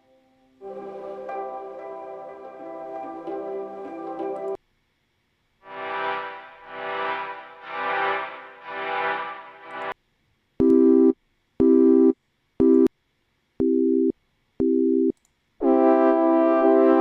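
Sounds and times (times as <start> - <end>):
buzzy synth chord: 5.7 - 10.0, 15.6 - 17.0.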